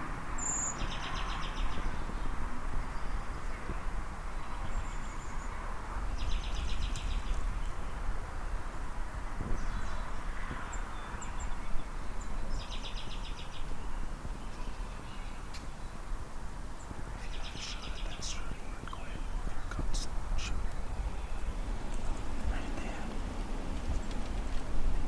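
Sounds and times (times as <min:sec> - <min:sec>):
steady low rumble: 0:17.2 - 0:25.0.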